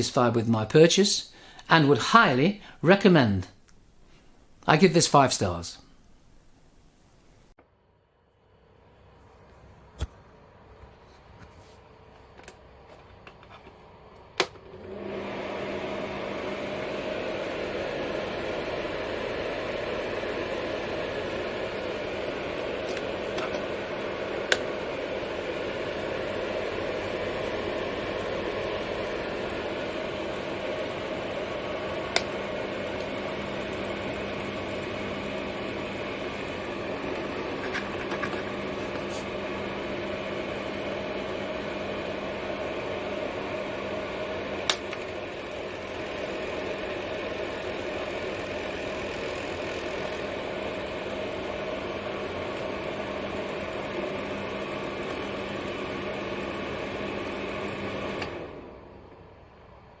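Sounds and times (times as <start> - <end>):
fan heater whirring: 8.2 - 60.0.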